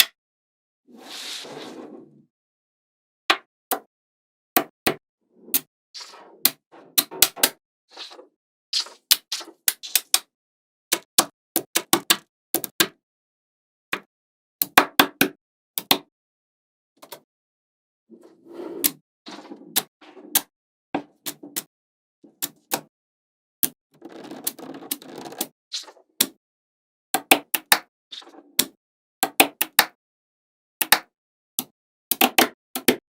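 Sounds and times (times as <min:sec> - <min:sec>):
balls rolling and scraping: 0:18.1 - 0:20.4.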